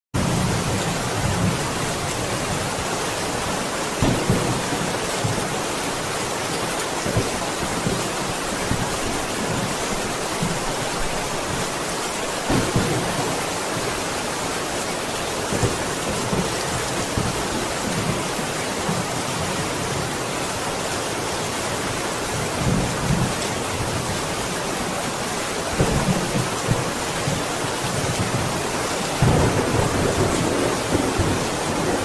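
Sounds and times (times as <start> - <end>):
heavy rain hiss: 0.2 - 32.0.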